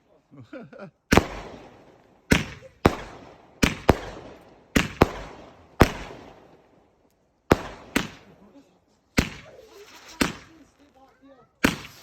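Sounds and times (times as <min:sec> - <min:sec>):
fireworks bangs: 0:01.1 - 0:06.8, 0:07.5 - 0:10.8, 0:11.6 - 0:12.0.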